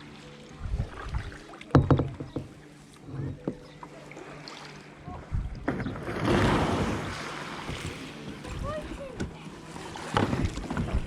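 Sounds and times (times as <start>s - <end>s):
rush of water or wind: 0.0s - 2.0s, 4.3s - 11.0s
sharp knocks against a kayak: 1.6s - 3.7s, 10.0s - 11.0s.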